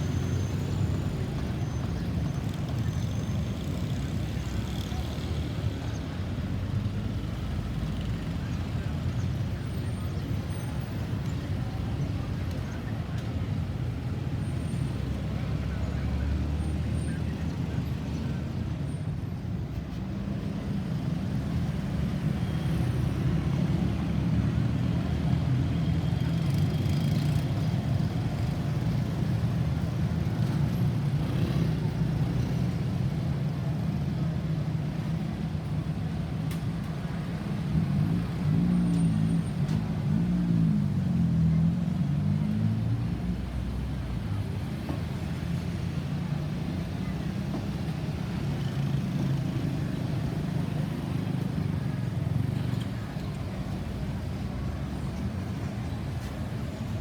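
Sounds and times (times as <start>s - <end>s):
traffic engines rumbling: 0.0s - 57.0s.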